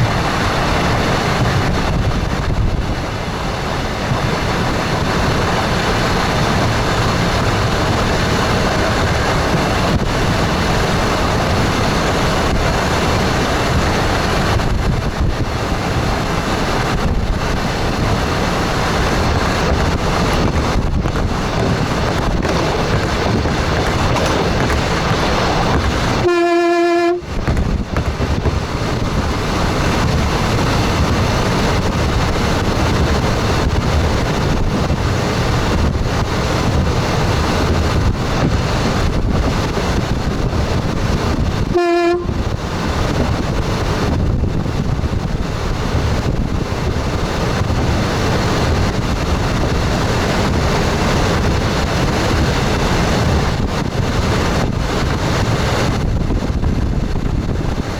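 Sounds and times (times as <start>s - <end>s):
electric train running: 0.0s - 57.9s
train horn: 26.1s - 27.4s, 41.7s - 42.6s.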